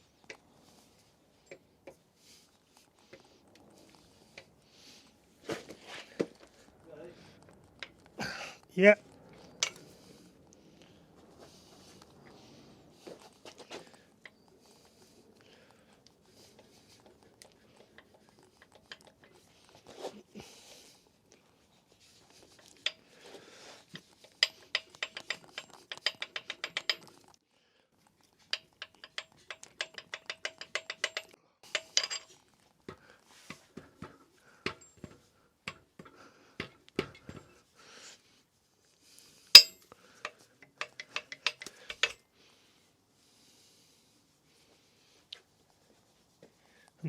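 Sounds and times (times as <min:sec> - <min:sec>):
ratchet clicking: 0:24.3 - 0:27.2, 0:28.5 - 0:32.2
tool knocks and clinks: 0:39.6 - 0:39.8.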